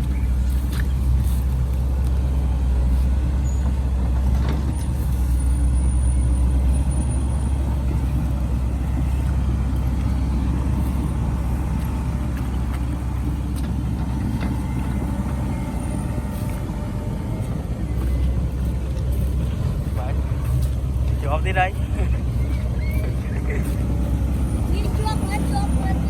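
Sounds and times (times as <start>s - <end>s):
heavy diesel engine droning: 0.0s - 26.0s.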